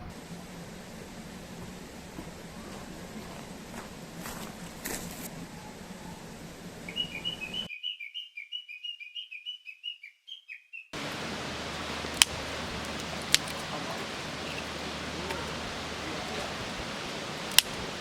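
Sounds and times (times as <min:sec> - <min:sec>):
steady rushing hiss: 0:00.0 - 0:07.7, 0:11.0 - 0:18.0
songbird chirping: 0:00.0 - 0:18.0
sharp crack: 0:11.0 - 0:18.0.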